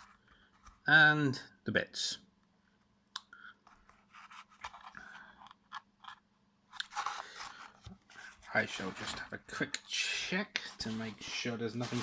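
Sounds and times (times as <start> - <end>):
crinkly packaging rustling: 3.7 - 10.0, 10.6 - 12.0.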